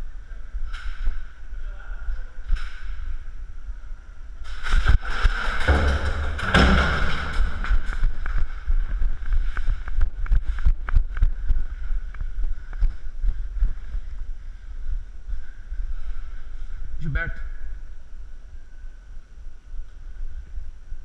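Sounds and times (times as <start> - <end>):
wind rumbling on microphone: 0.0 - 17.0
knocks and clatter: 4.5 - 8.6.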